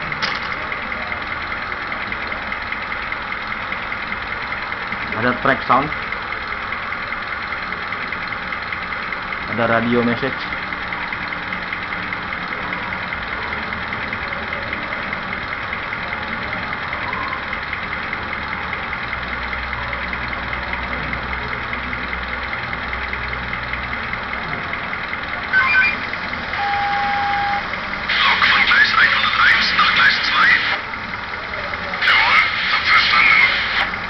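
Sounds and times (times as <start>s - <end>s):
diesel engine sound effect: 0.0s - 34.0s
model train track noise: 0.0s - 34.0s
short beeps: 25.5s - 27.7s
held electronic tone: 25.5s - 30.8s
crackly radio message: 28.1s - 30.8s, 32.0s - 33.9s.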